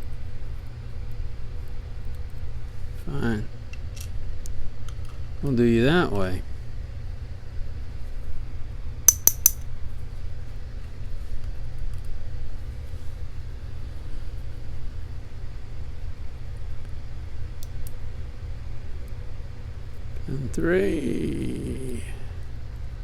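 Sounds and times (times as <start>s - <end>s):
faint ticks of small tools: 9.1s - 9.6s
light metallic clicks: 9.1s - 9.6s
steady low hum: 12.4s - 23.0s.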